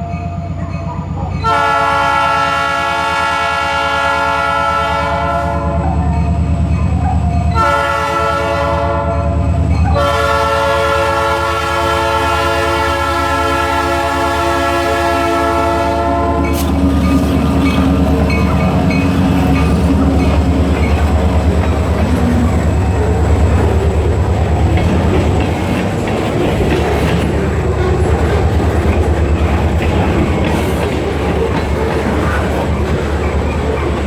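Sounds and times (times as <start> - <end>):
diesel train rumble: 0.0 - 34.0
locomotive air horn blasts: 1.4 - 5.9, 7.6 - 9.4, 10.0 - 20.0.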